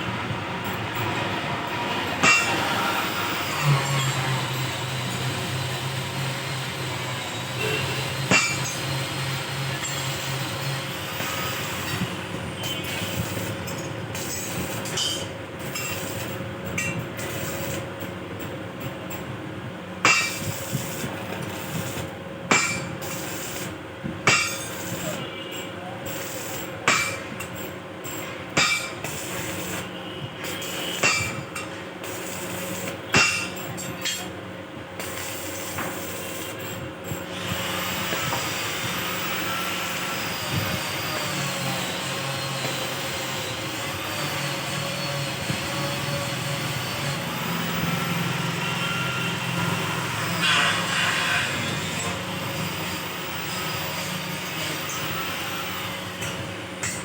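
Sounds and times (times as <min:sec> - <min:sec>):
steady mechanical noise: 0:00.0 - 0:57.0
hammer on steel: 0:02.2 - 0:04.2, 0:07.6 - 0:09.0, 0:20.1 - 0:20.6, 0:22.5 - 0:23.3, 0:24.3 - 0:25.2, 0:26.8 - 0:27.6, 0:28.6 - 0:29.8, 0:30.5 - 0:34.3.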